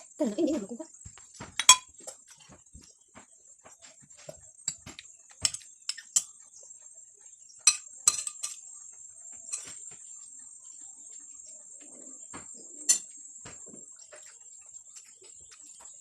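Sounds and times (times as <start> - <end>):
cutlery clinking on plates: 1.5 - 2.2, 7.6 - 8.6, 9.5 - 9.8, 12.9 - 13.2.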